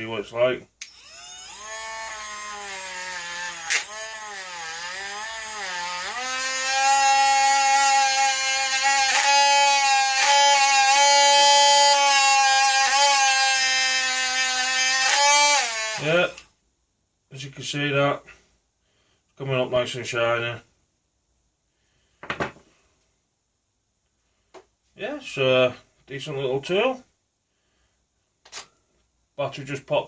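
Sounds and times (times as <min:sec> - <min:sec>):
rotary grinder whining on metal: 0:00.8 - 0:16.4.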